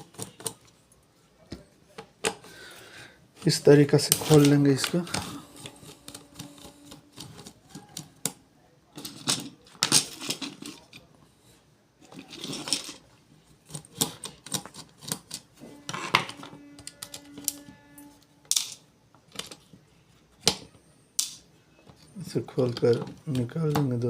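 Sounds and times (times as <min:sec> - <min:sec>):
plastic and metal parts clicking: 0:00.0 - 0:00.8, 0:13.6 - 0:17.7, 0:18.5 - 0:19.8, 0:20.4 - 0:24.0
faint steady ringing tone: 0:15.6 - 0:18.9.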